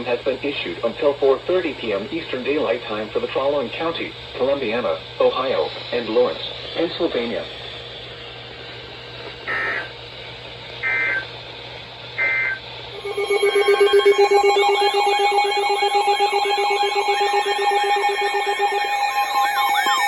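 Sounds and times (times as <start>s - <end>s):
warbling alarm: 9.4s - 9.9s, 10.8s - 11.3s, 12.2s - 20.0s
two-tone digital data chirps: 10.8s - 11.2s, 12.2s - 20.0s
steady alert tone: 12.2s - 20.0s.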